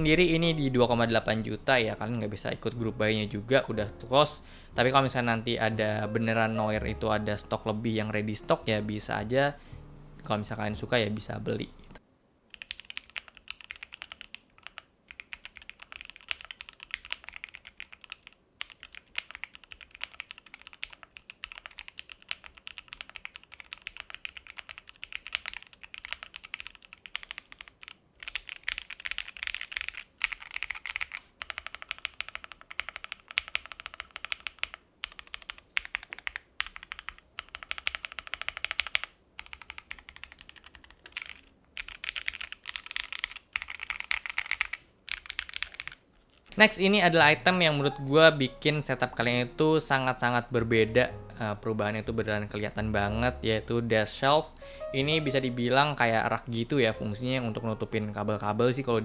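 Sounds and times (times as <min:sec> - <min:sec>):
mechanical keyboard typing: 0:12.5 - 0:46.4.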